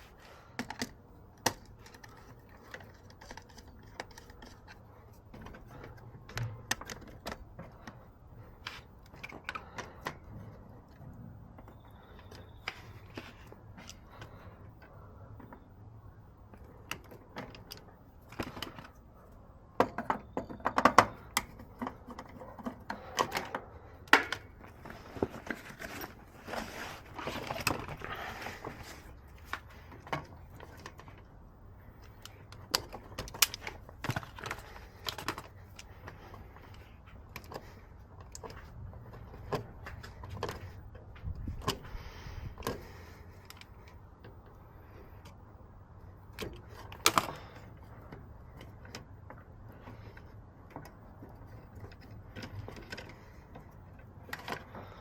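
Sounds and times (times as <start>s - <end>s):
hand tools clicking and tapping: 0.2s - 15.7s, 19.6s - 31.3s, 31.9s - 44.6s.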